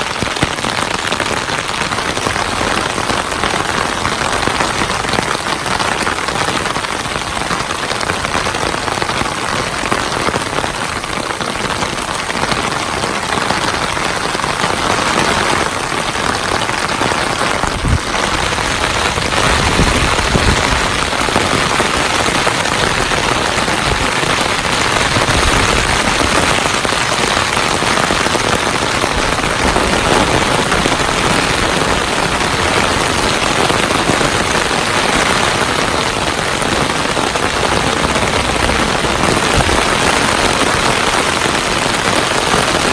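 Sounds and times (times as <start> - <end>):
heavy rain pouring: 0.0 - 42.9
low rumble: 37.3 - 40.6.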